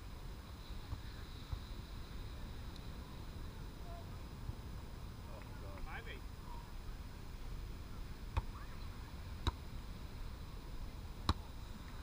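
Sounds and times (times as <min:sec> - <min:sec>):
low background hiss: 0:00.0 - 0:12.0
volleyball slaps: 0:09.4 - 0:09.6, 0:11.2 - 0:11.5.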